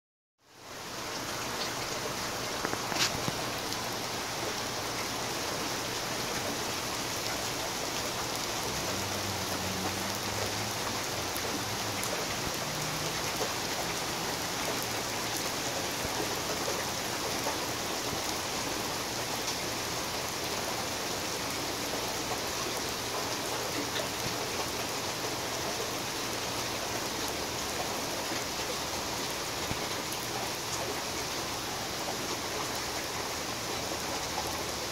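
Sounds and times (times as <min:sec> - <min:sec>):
steady rain falling: 0:00.4 - 0:34.9.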